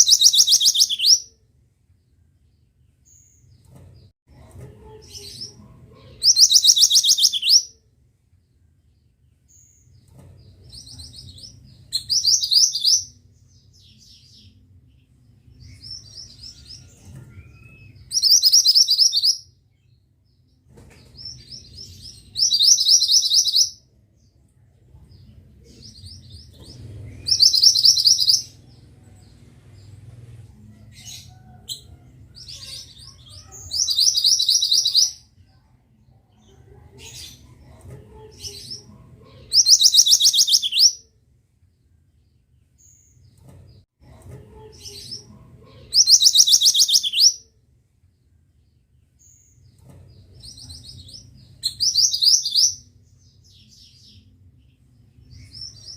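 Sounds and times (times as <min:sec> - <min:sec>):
soft bird chirps: 0:00.0 - 0:01.4, 0:05.1 - 0:07.8, 0:08.9 - 0:20.0, 0:20.8 - 0:30.2, 0:39.5 - 0:41.1, 0:44.8 - 0:47.5.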